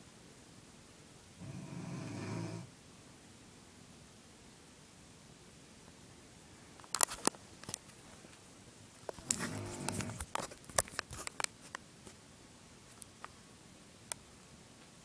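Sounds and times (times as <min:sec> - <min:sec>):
woman snoring: 0:01.4 - 0:02.7, 0:09.2 - 0:10.2
sharp clicks and rustles: 0:06.8 - 0:08.0, 0:09.0 - 0:11.8.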